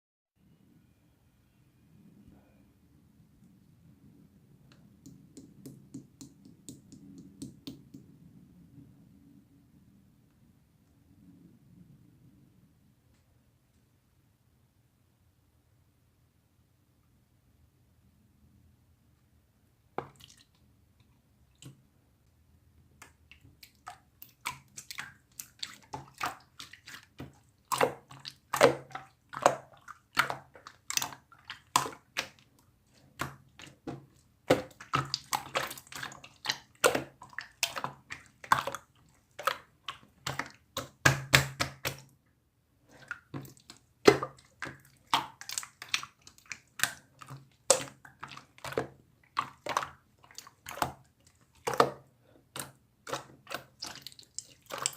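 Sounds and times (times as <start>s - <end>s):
slime squishing: 23.0s - 42.2s, 42.8s - 54.9s.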